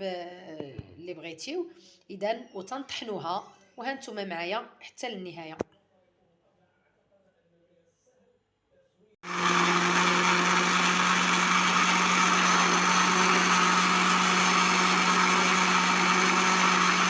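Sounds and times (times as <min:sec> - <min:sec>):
electric blender running: 0:09.2 - 0:17.0.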